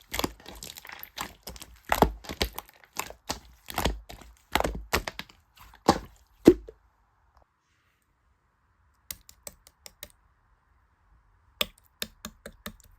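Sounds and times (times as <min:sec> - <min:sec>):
hollow plop: 0:00.0 - 0:06.8.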